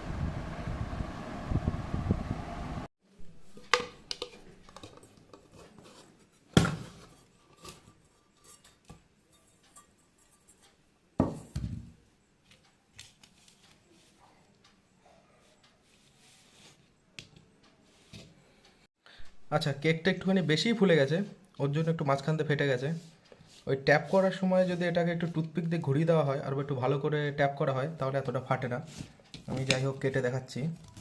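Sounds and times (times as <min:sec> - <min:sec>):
air fryer fan whooshing: 0:00.0 - 0:02.9.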